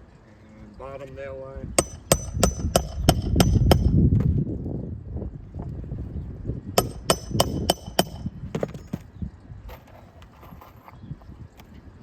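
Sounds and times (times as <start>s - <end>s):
hammer striking nails: 1.8s - 4.0s, 6.8s - 9.0s.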